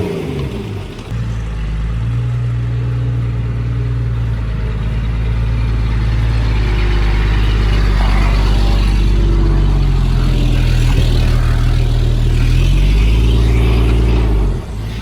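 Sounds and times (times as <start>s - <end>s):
heavy diesel machine engine droning: 0.0s - 15.0s.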